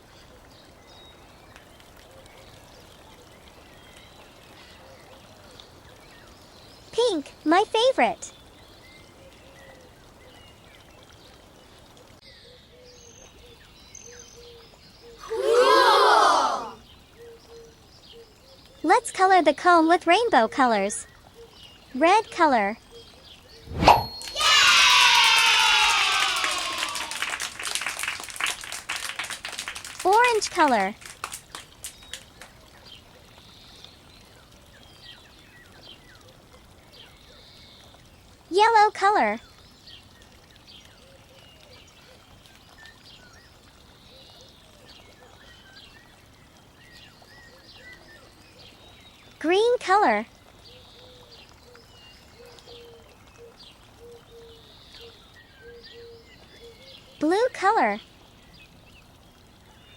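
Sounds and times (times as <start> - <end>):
brief held tones: 23.7 - 24.4
short high chirps: 23.7 - 24.4.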